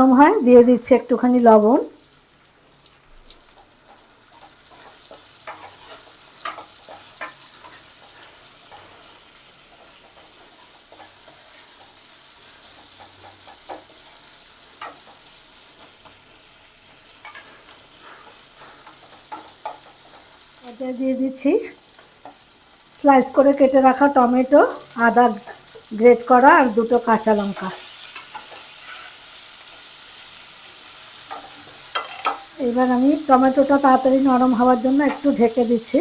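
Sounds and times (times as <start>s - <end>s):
onions sizzling in oil: 0.0s - 36.0s
spatula scraping pan: 3.5s - 20.6s, 27.3s - 30.2s, 30.8s - 32.5s.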